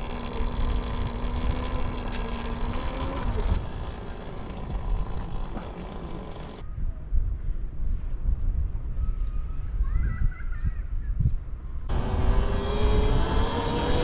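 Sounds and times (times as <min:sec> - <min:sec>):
electric motor whine: 0:00.0 - 0:06.6, 0:11.9 - 0:14.0
wind rumble on microphone: 0:00.0 - 0:14.0.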